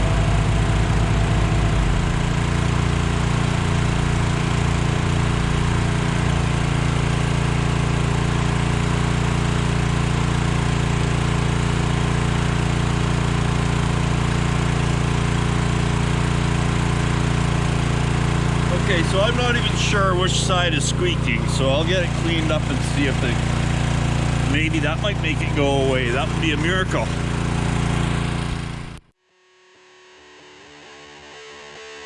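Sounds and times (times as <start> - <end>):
engine running steadily: 0.0 - 29.0.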